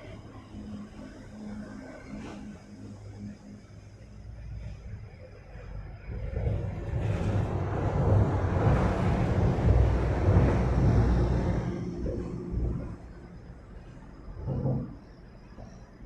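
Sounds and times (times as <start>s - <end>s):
vehicle rumbling over bridge: 4.5s - 15.8s.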